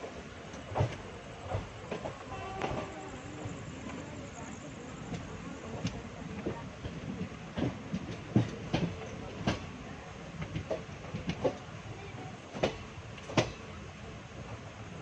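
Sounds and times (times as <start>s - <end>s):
wheels clacking over rail joints: 0.0s - 13.9s
train coach rumbling on track: 0.0s - 15.0s.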